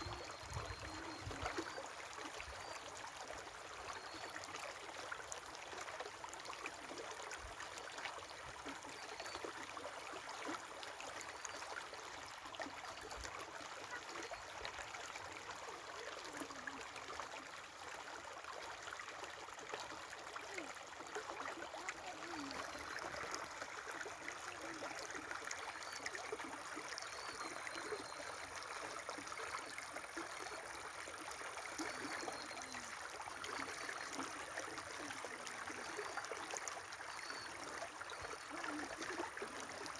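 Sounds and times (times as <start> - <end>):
river water babbling: 0.0 - 39.9.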